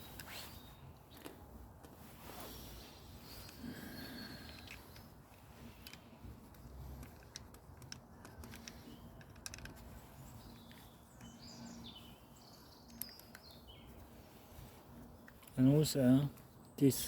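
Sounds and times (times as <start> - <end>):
birds chirping: 2.3 - 17.0
screwdriver and screws clicking: 5.8 - 10.0.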